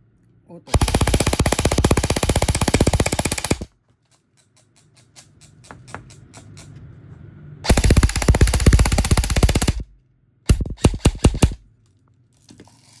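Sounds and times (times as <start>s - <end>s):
airsoft rifle firing full auto: 0.7s - 3.7s, 7.6s - 9.9s, 10.5s - 11.6s.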